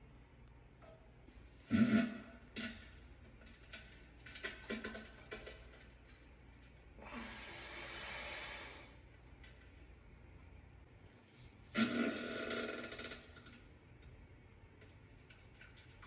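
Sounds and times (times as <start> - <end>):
men farting: 11.8 - 13.2.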